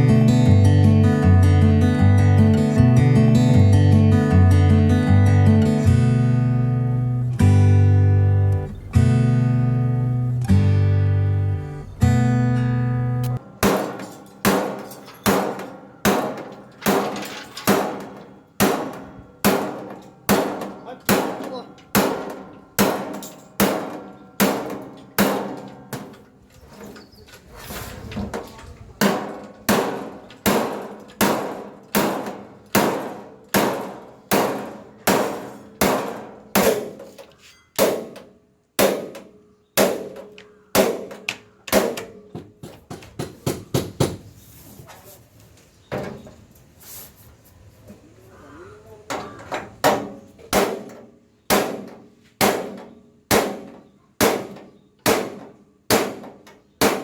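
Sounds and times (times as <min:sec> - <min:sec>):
hammer striking steel sheet: 0:13.3 - 0:26.2, 0:29.0 - 0:37.2.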